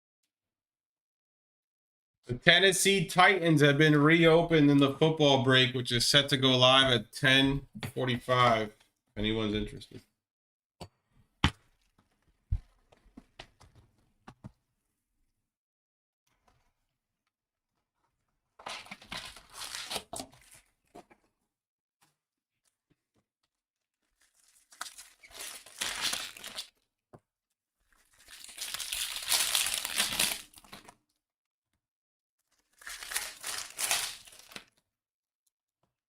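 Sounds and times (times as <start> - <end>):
plastic packaging tearing and crinkling: 18.7 - 20.7, 24.0 - 26.7, 28.0 - 31.0, 32.5 - 34.8.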